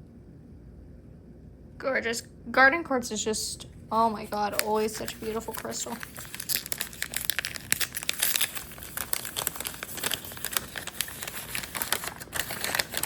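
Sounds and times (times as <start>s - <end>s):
packing wrap crinkling: 4.2s - 13.0s.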